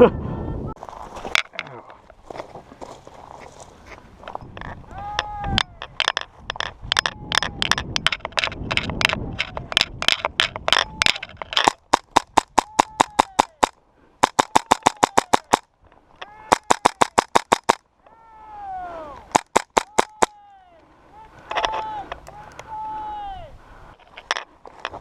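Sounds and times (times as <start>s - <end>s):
rustling movement: 0.8s - 4.9s, 23.7s - 25.0s
airsoft guns firing bursts: 11.8s - 15.6s, 16.5s - 17.8s, 19.3s - 20.2s.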